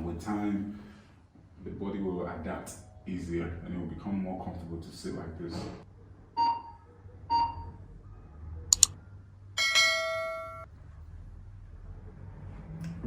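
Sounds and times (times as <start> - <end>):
sharp double click: 8.7 - 8.9
bright bell-like chime: 9.6 - 10.7.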